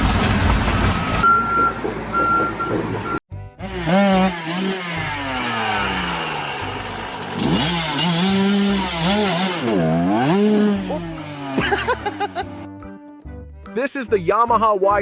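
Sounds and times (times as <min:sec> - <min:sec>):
dirt bike engine revving: 0:03.6 - 0:12.7.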